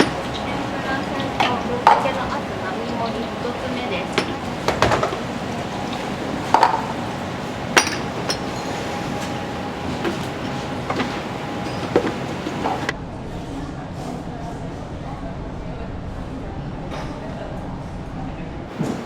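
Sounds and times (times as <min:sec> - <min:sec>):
dishes and utensils clinking: 0:00.0 - 0:12.9, 0:18.7 - 0:19.0
kitchen background noise: 0:00.0 - 0:12.9, 0:18.7 - 0:19.0.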